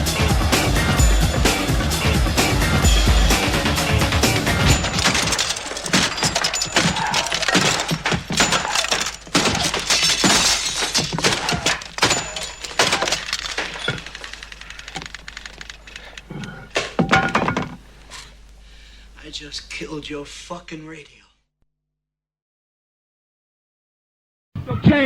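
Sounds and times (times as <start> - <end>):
crashing impacts: 0.6 - 18.3
glass shattering: 4.5 - 15.2, 15.8 - 17.8.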